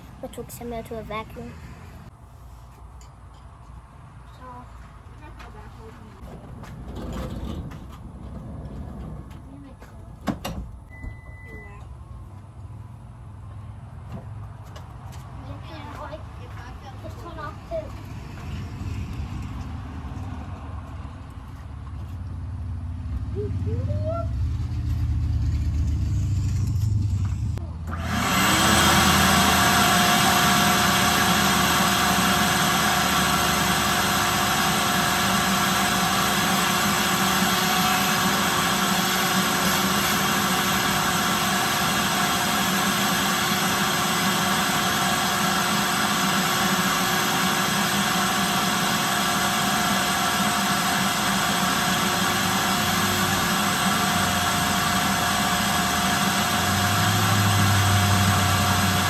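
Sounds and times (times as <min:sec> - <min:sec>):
deep rumble: 0:06.2 - 0:10.1
vacuum cleaner motor running: 0:27.9 - 0:59.0.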